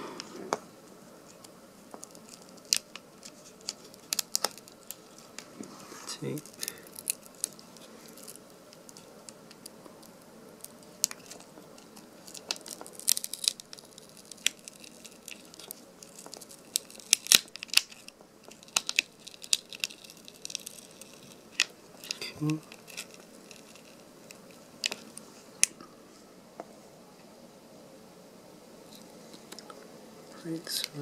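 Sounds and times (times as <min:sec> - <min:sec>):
adhesive tape peeling crackles: 0:01.2 - 0:25.8.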